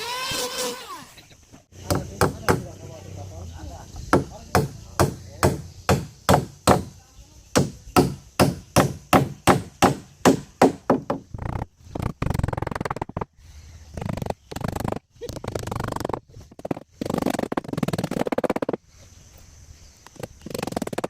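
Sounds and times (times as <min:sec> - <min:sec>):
tool striking wood: 0:01.8 - 0:02.8, 0:04.0 - 0:11.3.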